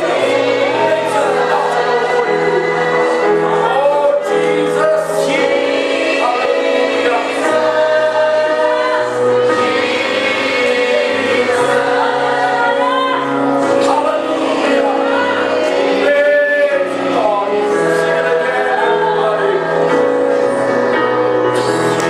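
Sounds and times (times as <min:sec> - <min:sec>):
gospel choir singing: 0:00.0 - 0:22.0
instrumental accompaniment: 0:00.0 - 0:22.0.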